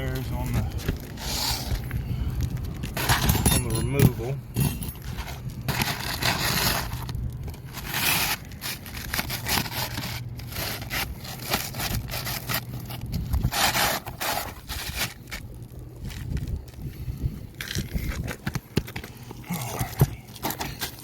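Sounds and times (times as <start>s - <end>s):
matting scraping on decking: 5.1s - 7.1s, 7.7s - 15.4s.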